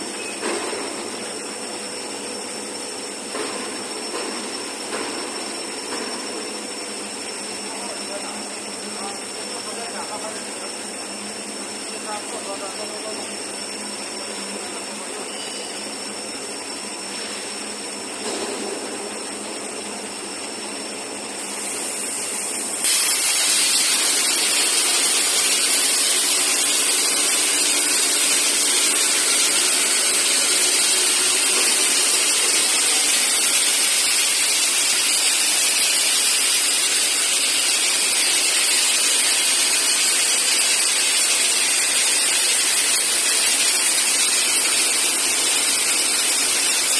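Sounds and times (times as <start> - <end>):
machine noise: 0.0 - 46.9
cutting torch hissing: 21.4 - 46.9.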